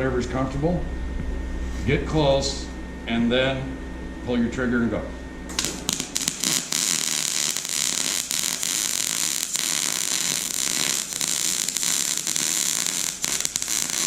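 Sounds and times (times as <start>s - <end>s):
welding arc crackling sizzle: 5.5s - 14.0s
welding gun striking arc: 5.5s - 14.0s.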